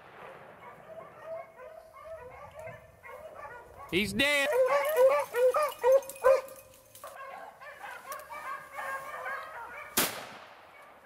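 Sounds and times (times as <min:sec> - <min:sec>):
gunshot: 0:00.0 - 0:00.6, 0:10.0 - 0:10.7
hounds baying: 0:00.2 - 0:10.0.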